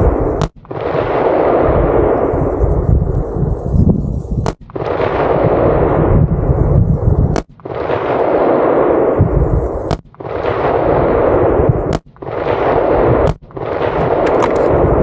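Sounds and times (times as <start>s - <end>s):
long rumble after gunshot: 0.0s - 15.0s
suppressed rifle shots: 11.8s - 15.0s.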